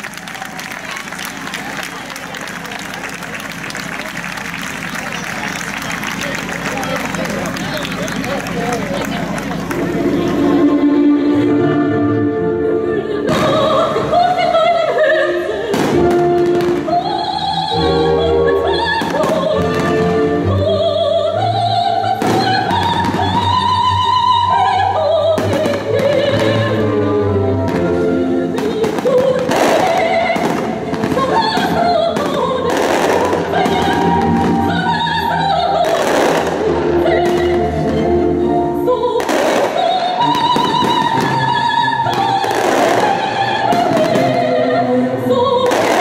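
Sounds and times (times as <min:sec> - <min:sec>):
operatic singing over sound system: 0:00.0 - 0:46.0
fireworks bursting: 0:15.7 - 0:17.1, 0:25.3 - 0:26.8, 0:27.7 - 0:35.0, 0:35.8 - 0:38.2, 0:39.2 - 0:44.6, 0:45.6 - 0:46.0.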